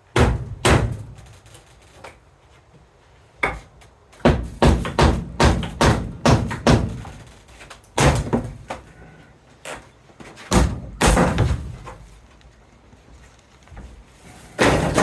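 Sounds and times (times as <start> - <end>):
loud knocks and thuds: 0.1 - 1.2, 4.2 - 7.2, 8.0 - 8.7, 10.5 - 12.0, 14.6 - 15.0.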